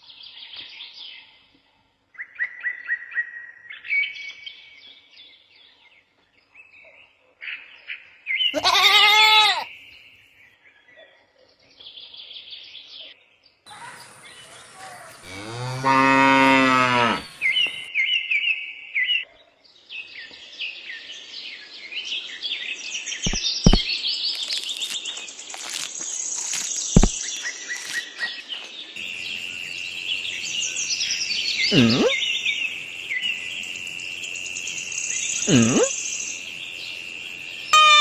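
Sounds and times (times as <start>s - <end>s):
birds chirping and twittering: 0.0s - 38.0s
cow mooing: 15.2s - 17.4s, 31.7s - 32.2s, 35.5s - 35.9s
sharp clicks: 23.3s - 23.9s
questioning hum: 31.6s - 32.2s, 35.4s - 36.0s.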